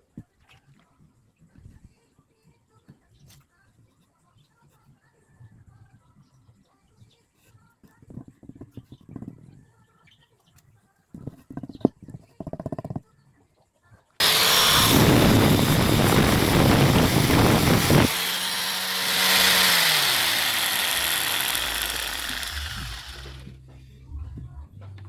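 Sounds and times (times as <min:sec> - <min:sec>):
loud power tool running: 0:14.2 - 0:23.6.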